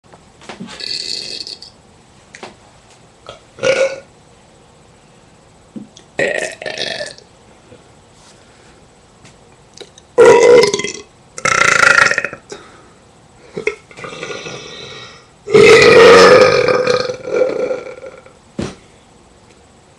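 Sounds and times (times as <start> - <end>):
loud burps: 0.7 - 1.7, 3.3 - 4.1, 6.2 - 7.2, 10.2 - 12.6, 13.5 - 18.3.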